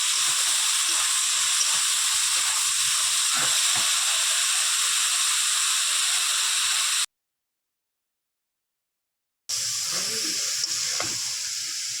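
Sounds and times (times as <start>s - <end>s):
fruit sizzling in hot oil: 0.0s - 7.1s, 9.5s - 12.0s.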